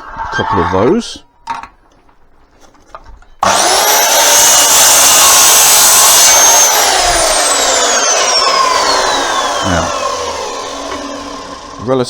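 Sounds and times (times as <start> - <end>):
electric saw whining: 3.4 - 12.0.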